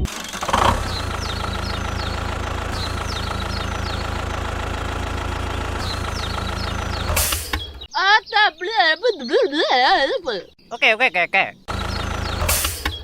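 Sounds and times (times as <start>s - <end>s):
engine idling: 0.0s - 8.0s, 11.7s - 13.0s
bird chirps: 0.8s - 13.0s.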